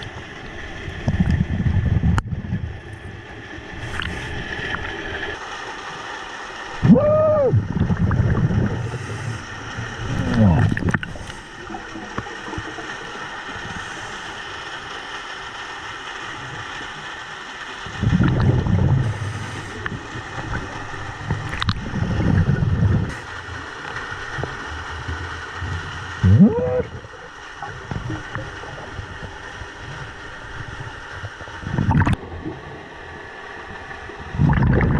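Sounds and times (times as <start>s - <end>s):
exhaled breath bubbling underwater: 3.7s - 5.4s, 6.8s - 14.5s, 17.8s - 32.9s, 34.2s - 34.9s
steady hiss: 5.4s - 31.8s.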